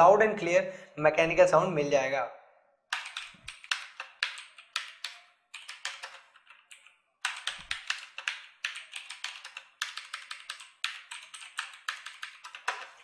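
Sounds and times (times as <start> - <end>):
mechanical keyboard typing: 2.9 - 13.0.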